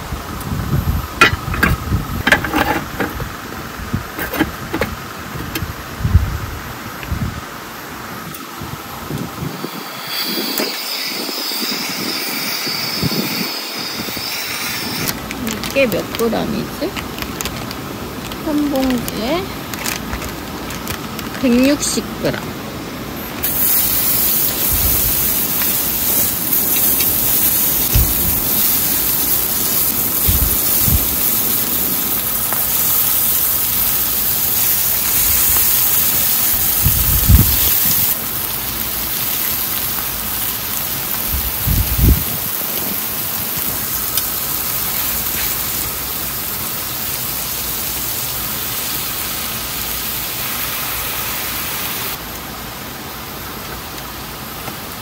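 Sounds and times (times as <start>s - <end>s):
food sizzling in a pan: 8.8s - 16.8s, 23.4s - 52.2s.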